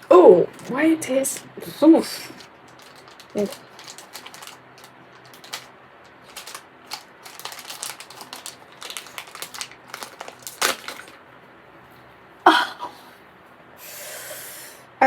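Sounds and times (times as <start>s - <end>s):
packaging crinkling by hand: 0.0s - 11.3s.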